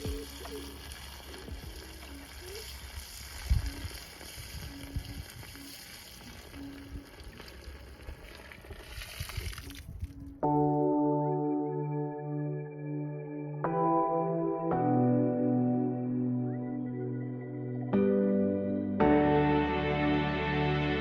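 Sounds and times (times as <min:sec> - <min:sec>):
steady hiss: 0:00.0 - 0:08.2
ambient music with singing bowl: 0:00.0 - 0:21.0.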